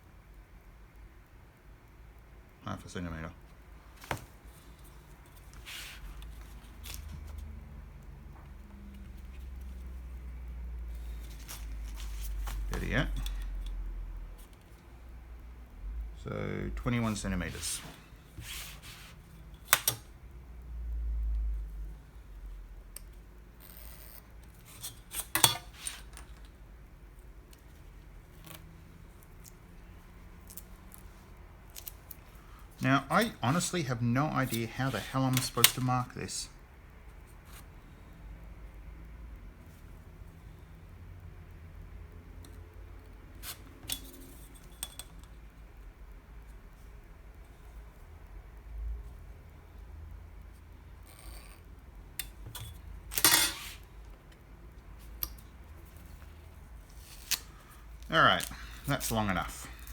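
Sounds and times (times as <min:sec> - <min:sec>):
light scrapes and rustles: 0:05.3 - 0:07.5, 0:52.5 - 0:53.9
tape being cut with snips: 0:19.6 - 0:20.0.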